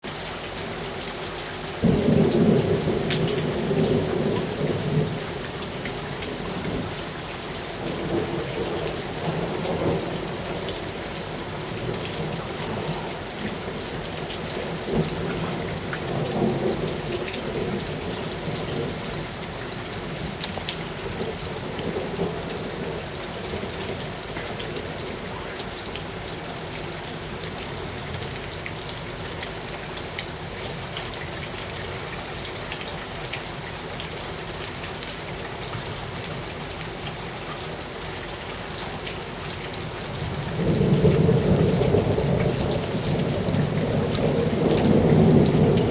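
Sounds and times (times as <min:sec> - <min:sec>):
steady rain: 0:00.0 - 0:45.9
thunder rumbling: 0:40.2 - 0:45.9.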